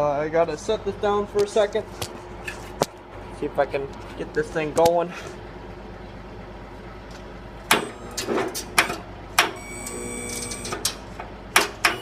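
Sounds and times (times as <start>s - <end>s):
electric starter cranking: 7.7s - 11.0s.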